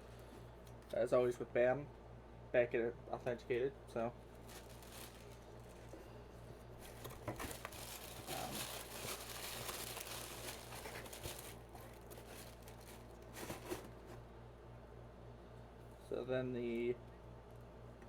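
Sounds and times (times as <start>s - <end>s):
packaging crinkling and rustling: 4.2s - 6.1s, 6.7s - 14.2s.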